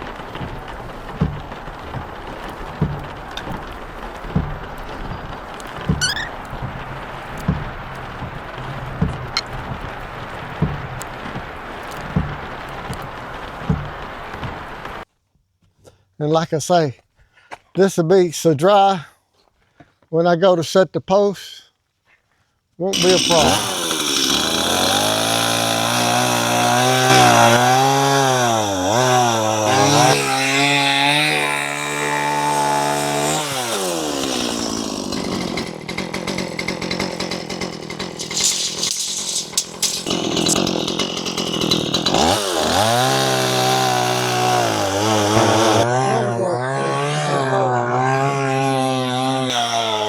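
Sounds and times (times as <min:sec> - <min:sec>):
engine clicks: 0:00.0 - 0:15.0, 0:35.6 - 0:42.3
small gasoline engine running: 0:23.0 - 0:50.0.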